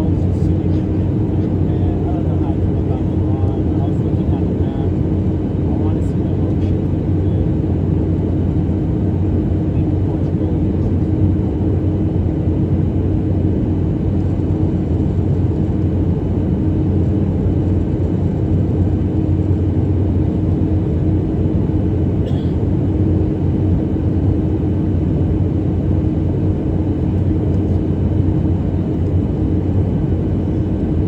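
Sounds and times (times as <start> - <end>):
airliner cabin rumble: 0.0 - 31.0.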